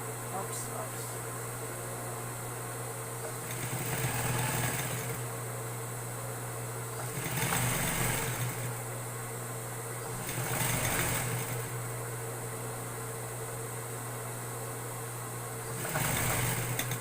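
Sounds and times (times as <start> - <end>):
steady low hum: 0.0 - 17.0
electric sewing machine stitching: 3.2 - 5.3, 7.0 - 8.8, 10.1 - 11.8, 15.6 - 17.0.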